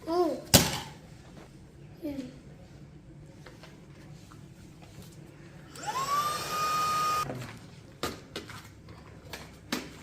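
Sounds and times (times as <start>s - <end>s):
handheld vacuum motor whine: 5.7s - 7.2s.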